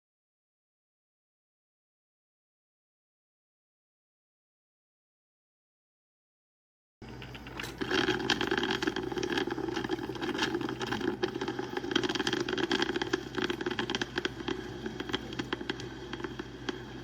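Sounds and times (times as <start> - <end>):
drip coffee maker brewing: 7.0 - 17.0.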